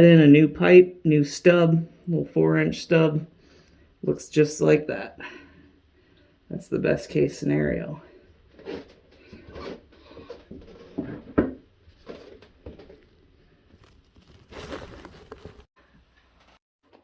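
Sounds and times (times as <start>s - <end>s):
rustling: 11.8s - 16.6s.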